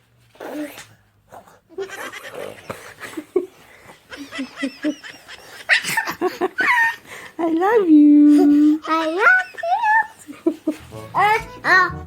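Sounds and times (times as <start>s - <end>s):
child making snoring sounds: 0.4s - 0.9s.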